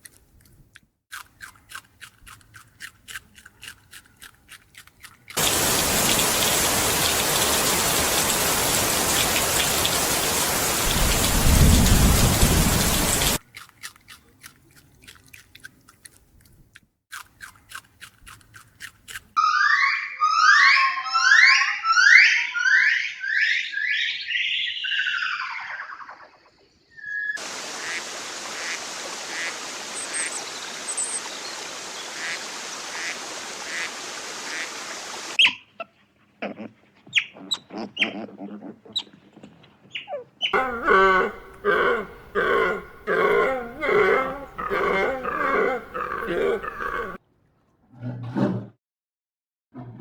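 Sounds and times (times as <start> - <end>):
animal hissing: 5.4 - 11.4, 40.6 - 47.2
repeated pitched animal calls: 19.4 - 27.4, 35.4 - 39.2, 39.9 - 47.2
low animal call: 40.1 - 47.2.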